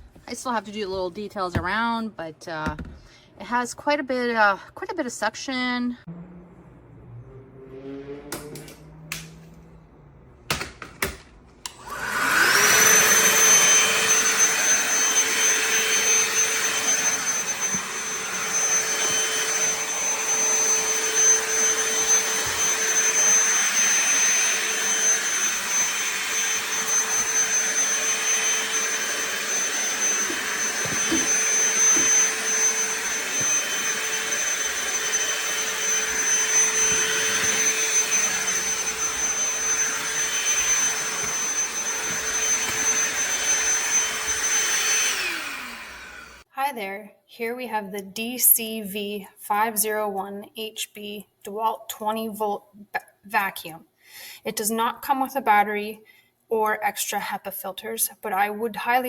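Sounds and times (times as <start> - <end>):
handheld vacuum motor whining: 11.7 - 46.5.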